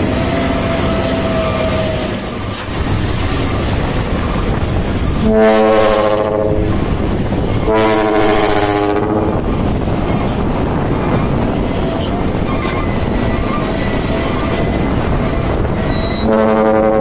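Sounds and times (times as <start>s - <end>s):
diesel engine rumbling: 0.0s - 17.0s
truck air horn blasts: 5.2s - 6.7s, 7.7s - 9.2s, 15.2s - 17.0s.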